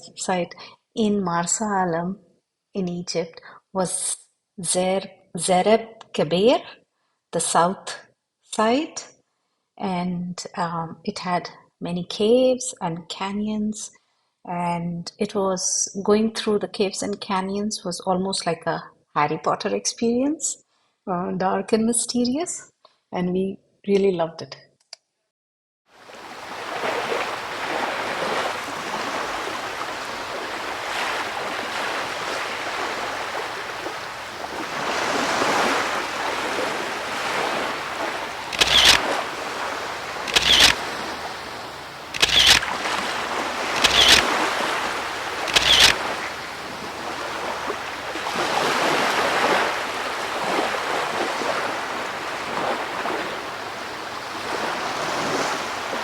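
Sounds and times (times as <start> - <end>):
surging water: 26.0 - 56.0
sharp clicks: 38.5 - 39.1, 40.2 - 40.9, 42.1 - 42.8, 43.7 - 44.3, 45.4 - 46.0.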